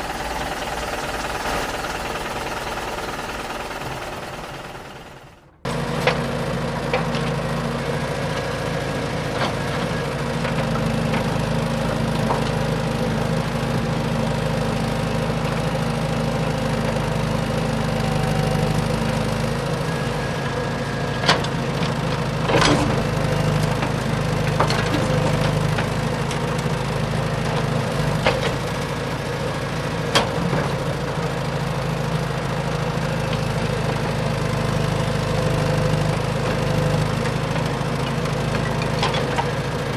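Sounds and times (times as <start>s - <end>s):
small engine running: 1.1s - 5.7s
sharp clicks or knocks: 3.8s - 5.7s.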